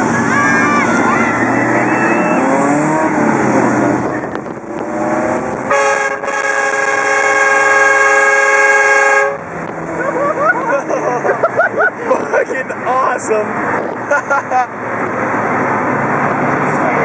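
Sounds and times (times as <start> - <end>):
vehicle noise: 0.0 - 17.0
train horn chord: 5.7 - 9.5.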